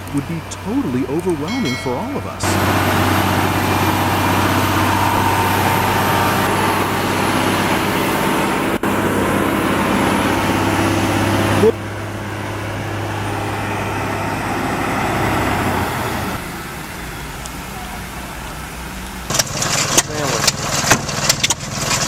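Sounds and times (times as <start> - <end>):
truck engine humming: 0.0 - 22.0.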